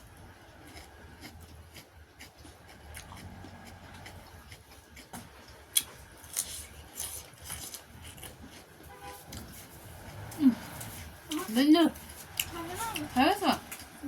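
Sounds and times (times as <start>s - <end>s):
chewing and mouth smacks: 0.5s - 11.6s.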